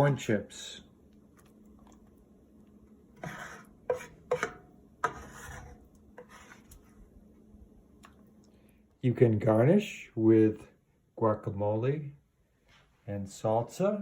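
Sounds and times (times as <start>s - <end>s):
faint steady hum: 0.0s - 14.0s
utensils scraping dishes: 3.2s - 6.6s.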